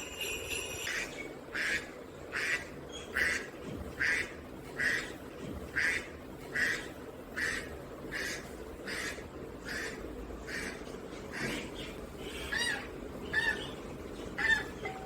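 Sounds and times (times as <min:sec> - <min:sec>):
bird calling: 0:06.6 - 0:15.0.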